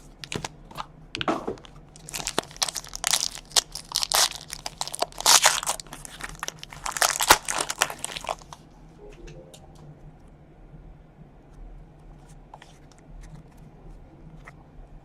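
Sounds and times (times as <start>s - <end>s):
wrapper crinkling and tearing: 0.0s - 0.8s, 1.6s - 8.6s.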